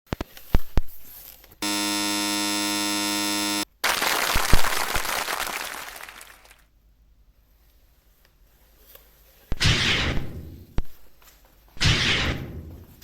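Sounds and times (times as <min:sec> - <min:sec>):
electronic buzzer: 0:01.6 - 0:03.7.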